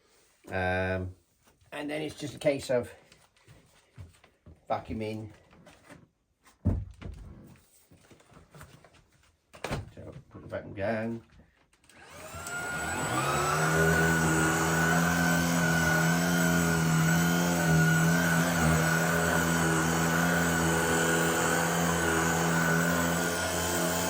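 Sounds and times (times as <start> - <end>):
vacuum cleaner running: 12.0 - 24.0.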